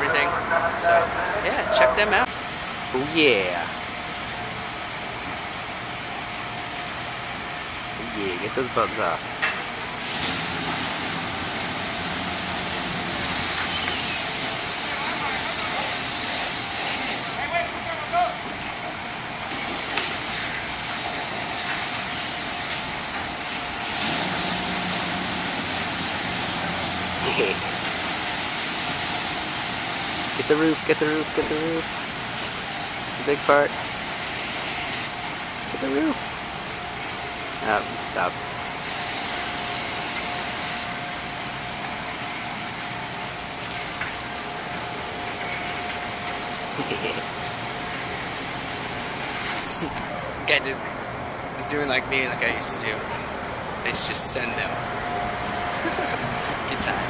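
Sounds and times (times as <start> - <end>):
high whine: 0.0 - 57.0
machine hum: 0.0 - 57.0
spraying water hiss: 9.9 - 17.6, 19.5 - 50.0.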